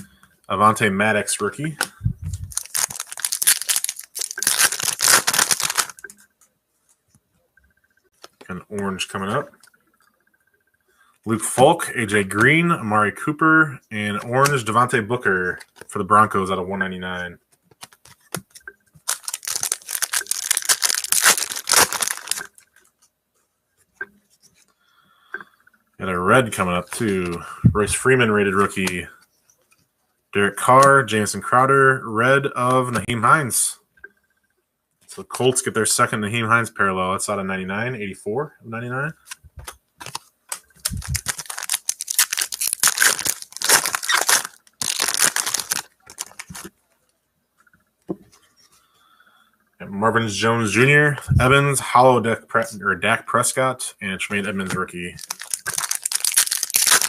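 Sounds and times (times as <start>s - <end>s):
foil wrapper tearing and crinkling: 2.5s - 6.0s, 19.0s - 22.7s, 40.0s - 46.7s, 55.2s - 57.0s.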